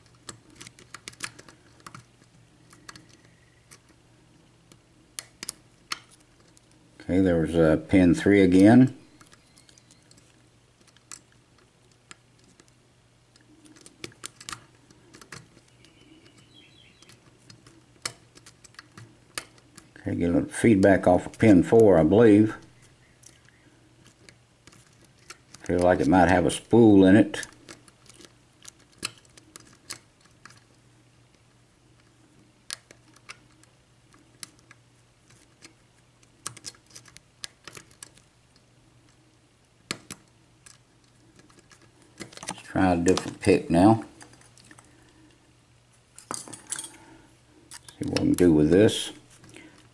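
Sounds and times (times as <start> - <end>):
lock pick clicking in a lock: 36.4 - 38.2.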